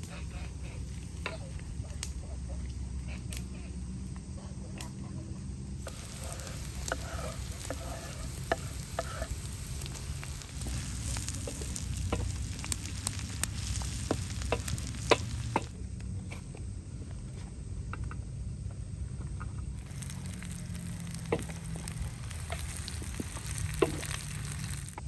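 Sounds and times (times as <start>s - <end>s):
utensil clicking against pan: 5.8s - 15.7s
food sizzling in a pan: 5.8s - 15.8s, 19.8s - 25.0s.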